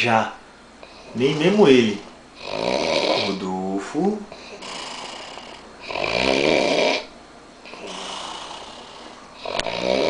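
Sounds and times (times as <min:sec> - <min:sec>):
man snoring: 0:01.1 - 0:01.8, 0:02.4 - 0:03.5, 0:04.5 - 0:07.1, 0:07.7 - 0:10.0.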